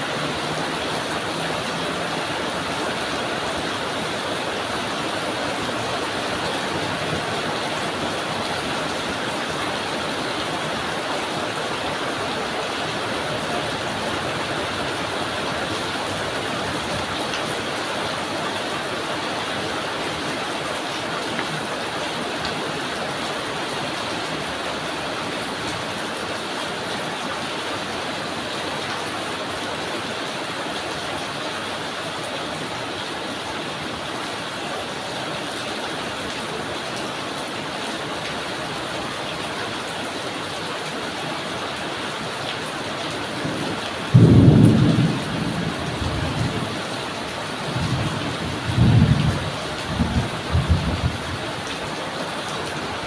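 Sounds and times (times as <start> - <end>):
rain falling: 0.0 - 53.0
thunder rumbling: 43.4 - 46.8, 47.6 - 51.4.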